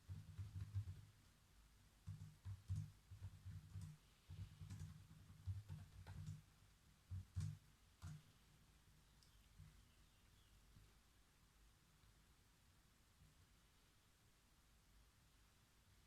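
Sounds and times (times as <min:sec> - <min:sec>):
faint typing on a keyboard: 0:00.0 - 0:11.1.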